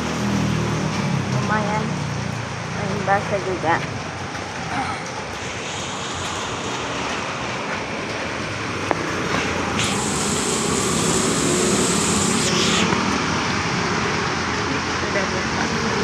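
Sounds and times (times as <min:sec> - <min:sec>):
heavy rain: 0:00.0 - 0:16.0
traffic on wet road: 0:00.0 - 0:16.0
high hiss: 0:05.4 - 0:07.9, 0:09.5 - 0:14.4.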